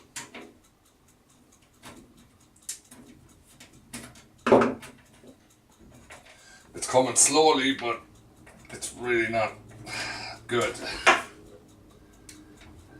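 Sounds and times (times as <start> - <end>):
light clicks and knocks on metal: 1.6 - 6.4.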